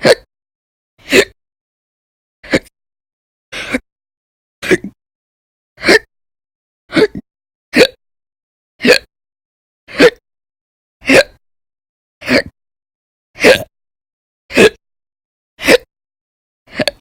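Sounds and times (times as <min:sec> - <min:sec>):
woman hiccuping: 0:00.0 - 0:00.3, 0:07.8 - 0:08.0, 0:09.9 - 0:10.2.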